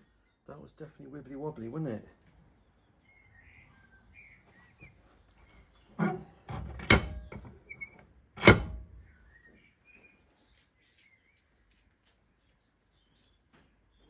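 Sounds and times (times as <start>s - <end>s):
birds chirping faintly: 2.2s - 14.0s
short clatter: 5.9s - 9.2s
sharp knocks: 6.0s - 7.6s, 8.4s - 9.0s.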